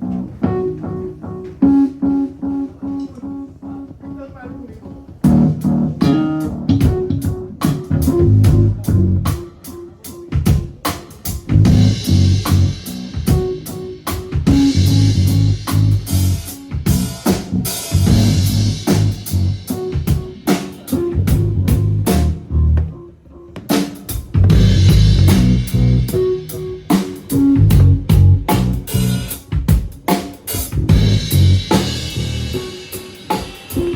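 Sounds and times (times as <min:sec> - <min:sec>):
bass guitar line: 0:00.0 - 0:01.9, 0:05.2 - 0:09.4, 0:11.5 - 0:20.0, 0:20.9 - 0:23.0, 0:24.4 - 0:29.4, 0:30.8 - 0:32.9
drum hits: 0:02.7 - 0:22.9, 0:23.6 - 0:33.9.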